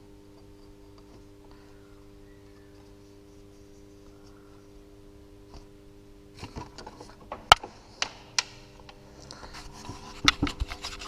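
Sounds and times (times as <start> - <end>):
light scraping and rustling: 9.2 - 11.0
sharp clicks and knocks: 10.2 - 11.0.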